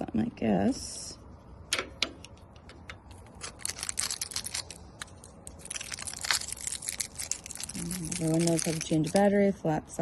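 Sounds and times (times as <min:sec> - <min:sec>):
batteries rattling: 0:03.1 - 0:09.4.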